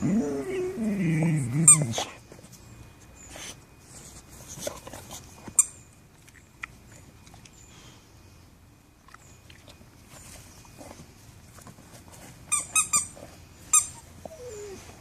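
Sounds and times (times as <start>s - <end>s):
squeaky dog toy squeaking: 12.5s - 14.0s.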